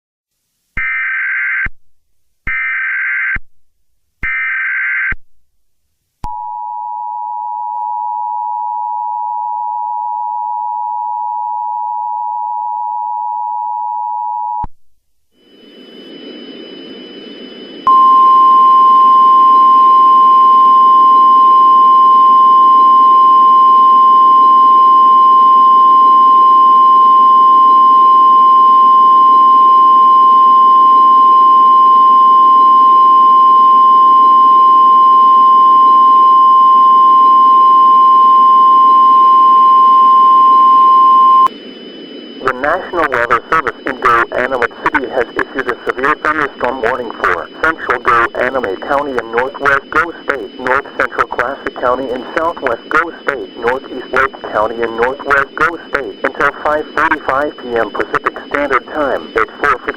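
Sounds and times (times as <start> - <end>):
steady weather-radio alert tone: 15.4 - 59.9
two-tone attention signal: 17.9 - 41.5, 42.4 - 59.9
static hiss: 42.3 - 59.9.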